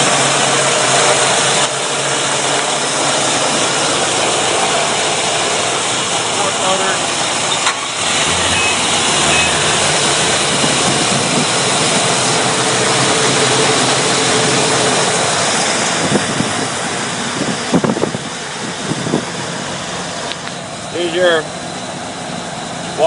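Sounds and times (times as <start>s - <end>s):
boat engine running: 3.2s - 15.0s.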